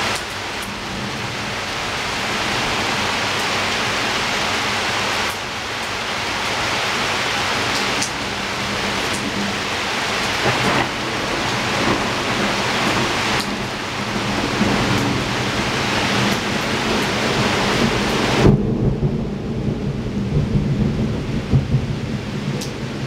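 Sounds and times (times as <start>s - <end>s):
heavy rain on a window: 0.0s - 23.0s
thunder rumbling: 6.5s - 23.0s.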